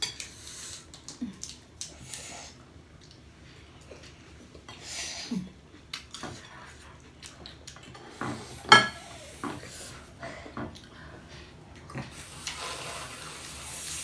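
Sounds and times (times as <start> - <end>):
dishes and cutlery clattering: 7.9 - 9.0.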